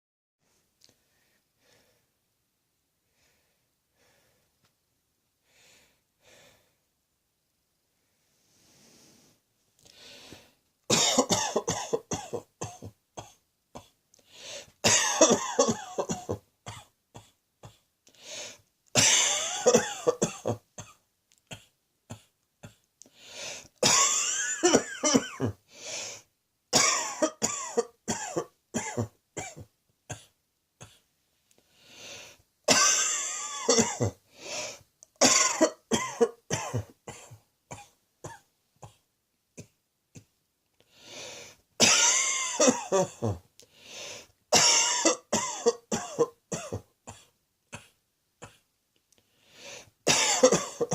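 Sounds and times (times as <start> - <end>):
person coughing: 10.9 - 14.0, 14.8 - 17.8, 19.0 - 22.8, 23.8 - 25.6, 26.8 - 31.0, 32.7 - 34.2, 35.2 - 39.0, 41.8 - 43.5, 44.6 - 48.6, 50.1 - 50.9.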